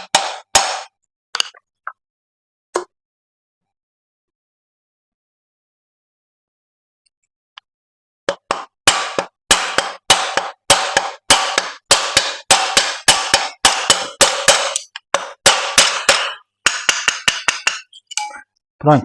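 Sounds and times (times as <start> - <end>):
hammer striking metal: 0.0 - 0.9, 8.3 - 18.4.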